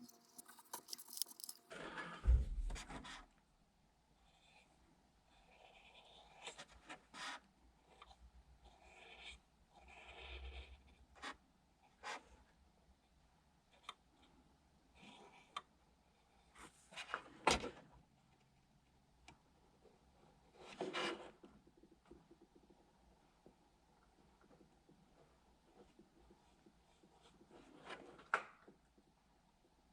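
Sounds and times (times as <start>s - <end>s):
small tools clicking and tapping: 0.0s - 1.7s.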